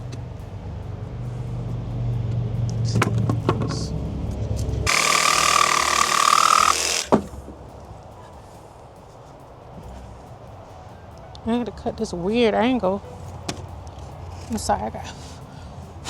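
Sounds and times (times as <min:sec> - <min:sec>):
power saw cutting wood: 0:04.9 - 0:07.2.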